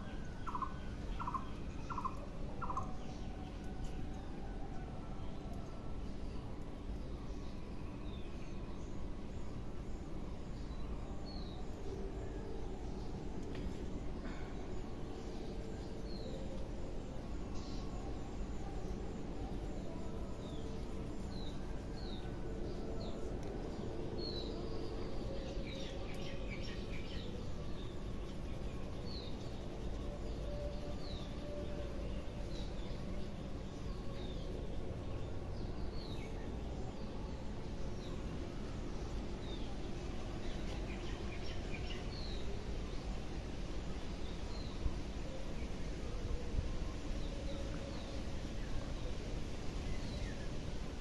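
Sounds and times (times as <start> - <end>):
small birds chirping: 0.0 - 3.6
steady low background noise: 0.0 - 51.0.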